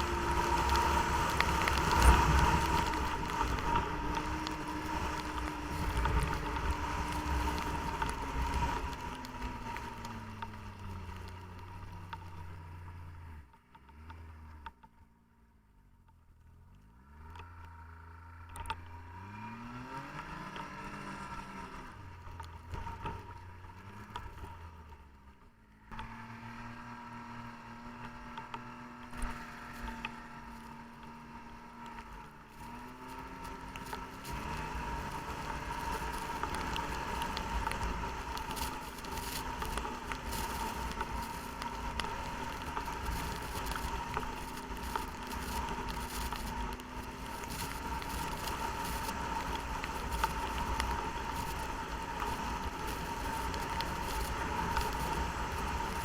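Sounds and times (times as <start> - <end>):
snowmobile engine revving: 0.0 - 14.6, 17.0 - 24.9, 25.9 - 56.0.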